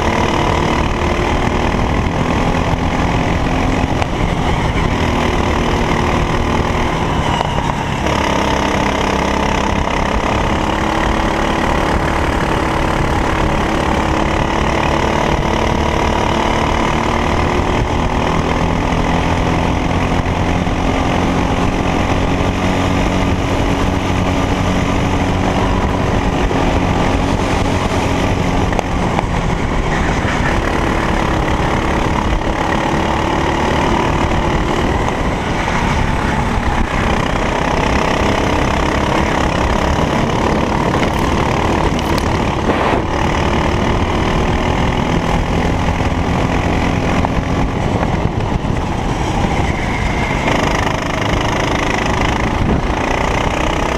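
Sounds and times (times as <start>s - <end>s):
kart engine running hard: 0.0s - 53.9s.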